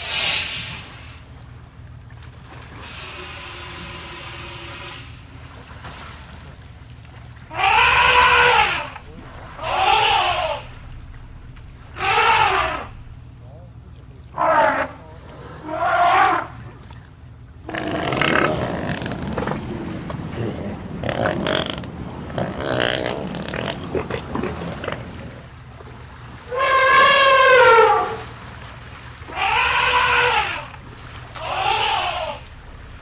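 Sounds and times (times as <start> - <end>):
elephant high squeals: 7.5 - 9.0, 9.6 - 10.7, 12.0 - 13.0, 15.6 - 16.5, 26.5 - 28.2, 29.3 - 30.8, 31.4 - 32.5
elephants calling: 7.5 - 10.8, 11.9 - 13.2, 14.3 - 15.0, 15.6 - 16.6, 26.5 - 28.3, 29.3 - 32.6.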